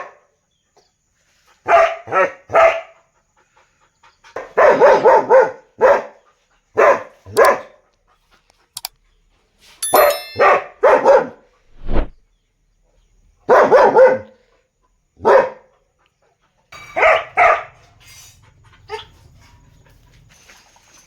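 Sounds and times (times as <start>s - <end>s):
dog barking aggressively: 0.0s - 0.2s, 1.6s - 3.0s, 4.4s - 6.2s, 6.8s - 7.8s, 10.4s - 11.5s, 13.5s - 14.4s, 15.2s - 15.7s, 16.8s - 18.0s.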